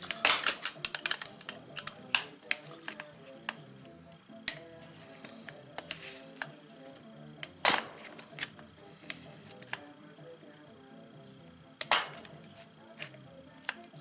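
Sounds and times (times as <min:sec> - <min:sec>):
metal tools clinking on workbench: 0:00.0 - 0:03.6, 0:11.8 - 0:12.4
quiet background music: 0:00.0 - 0:14.0.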